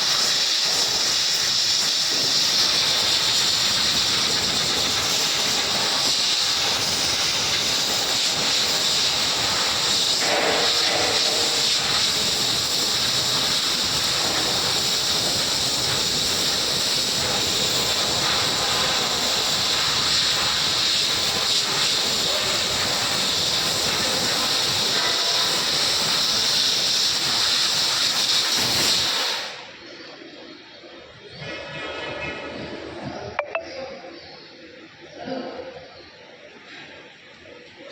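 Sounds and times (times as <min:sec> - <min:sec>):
laser cutter gas jet hissing: 0:00.0 - 0:30.0.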